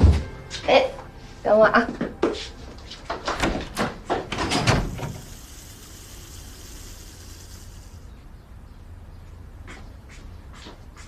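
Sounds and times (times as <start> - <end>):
knocks and clatter: 3.1 - 5.2
faint steady hiss: 4.7 - 8.5.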